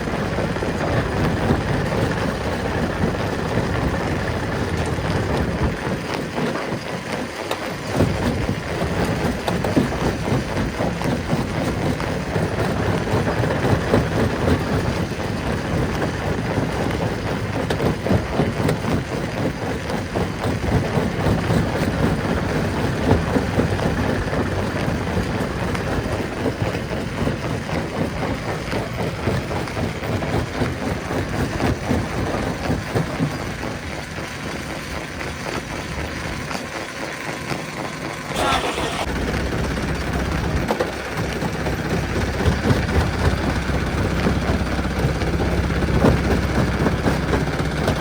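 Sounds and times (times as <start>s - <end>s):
low mechanical rumble: 0.0s - 6.2s, 20.3s - 48.0s.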